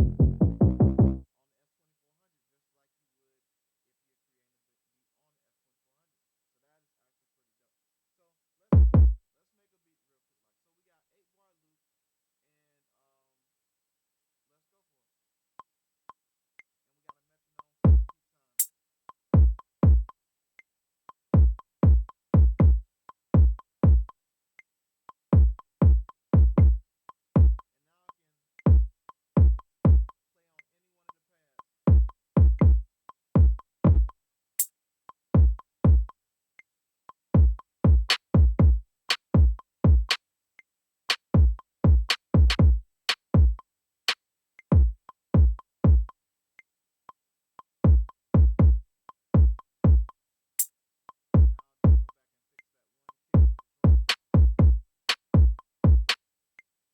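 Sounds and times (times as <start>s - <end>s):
electronic kick drum: 0.0s - 1.2s, 8.8s - 9.2s, 17.9s - 18.1s, 19.4s - 20.1s, 21.4s - 22.8s, 23.4s - 24.1s, 25.4s - 26.8s, 27.4s - 27.6s, 28.7s - 30.1s, 31.9s - 34.2s, 35.4s - 36.1s, 37.4s - 40.2s, 41.1s - 43.6s, 44.7s - 46.1s, 47.8s - 48.8s, 49.4s - 50.1s, 51.4s - 52.1s, 53.4s - 56.2s
hi-hat ticks: 17.1s - 36.2s, 37.1s - 40.2s, 41.1s - 56.7s.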